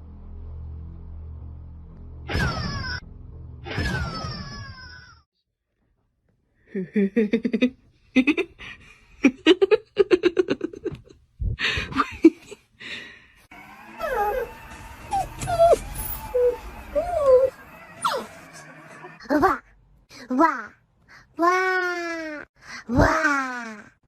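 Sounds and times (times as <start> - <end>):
dog whining: 14.0 - 19.0.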